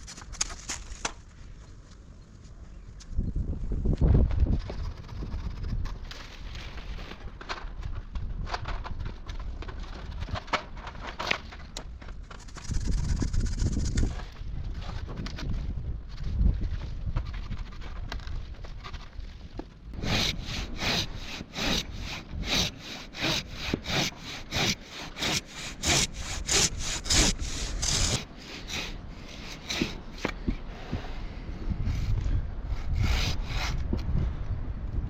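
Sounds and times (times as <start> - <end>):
pruning saw cutting branch: 20.0 - 30.4.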